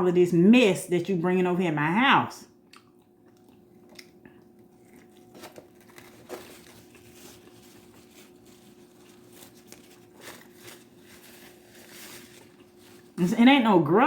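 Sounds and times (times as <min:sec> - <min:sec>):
faint steady hum: 0:00.0 - 0:14.0
person chewing food: 0:02.6 - 0:10.5
soft crinkles and clicks: 0:03.3 - 0:13.2.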